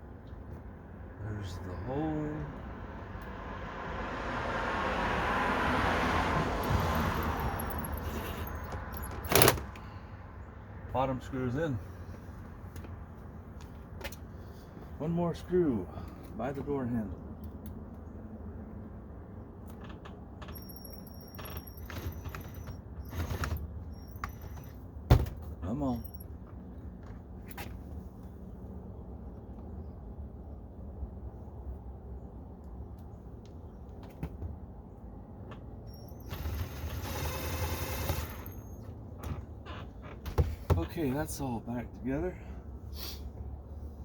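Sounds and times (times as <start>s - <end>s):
road vehicle passing: 0.6s - 15.0s.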